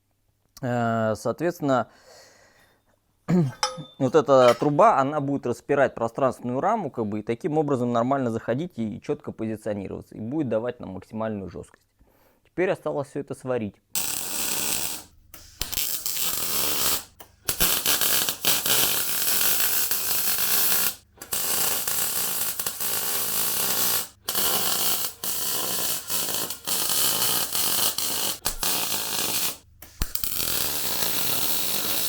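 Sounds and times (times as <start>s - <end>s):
welding arc crackling and hissing: 14.0s - 32.0s.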